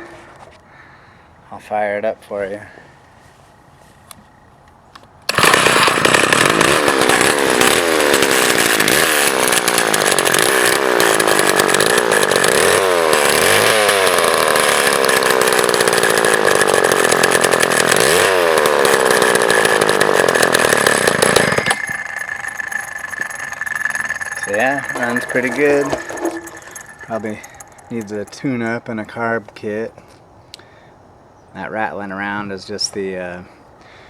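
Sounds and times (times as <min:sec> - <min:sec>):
spinning clutch rattling: 0:05.3 - 0:29.4
chainsaw engine revving: 0:05.3 - 0:29.5.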